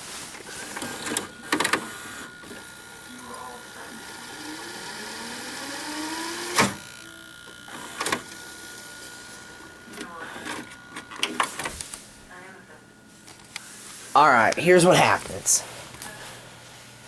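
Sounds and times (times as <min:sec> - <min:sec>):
rewind whine rising in pitch: 0:00.0 - 0:12.1
tape mechanism clicks: 0:00.6 - 0:03.3, 0:05.5 - 0:09.0
mechanism clunk: 0:06.5 - 0:07.0.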